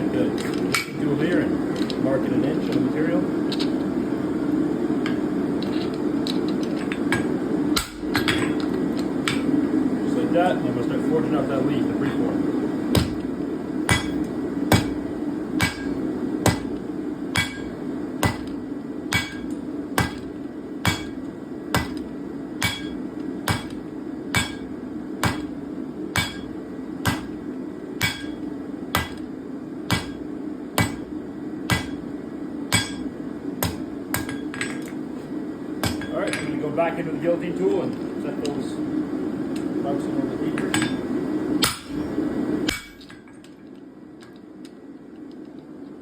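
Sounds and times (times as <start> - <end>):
steady hum: 0.0 - 46.0
hammer striking steel on anvil: 6.9 - 8.7, 13.9 - 15.0, 15.6 - 27.4, 28.0 - 28.4, 29.0 - 29.3, 29.9 - 31.1, 31.7 - 32.0, 32.7 - 35.0, 35.8 - 36.6, 40.6 - 43.5.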